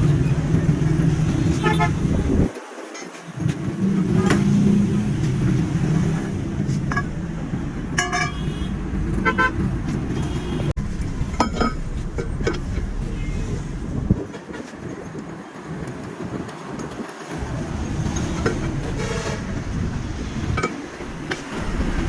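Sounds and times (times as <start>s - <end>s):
traffic rumble: 0.0s - 2.6s, 3.2s - 22.0s
vehicle horn toots: 1.5s - 2.2s, 8.0s - 10.7s.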